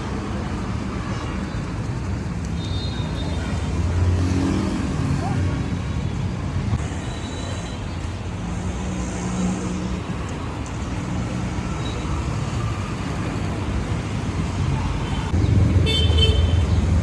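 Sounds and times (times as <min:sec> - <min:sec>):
busy road traffic: 0:00.0 - 0:17.0.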